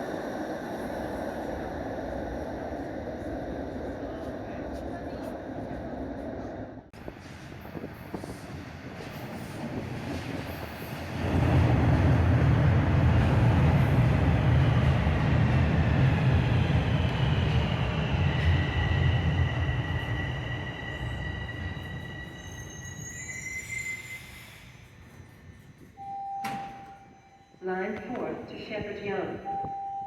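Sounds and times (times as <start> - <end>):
train rumbling on rails: 0.0 - 29.8
metallic wheel squeal: 22.2 - 25.8.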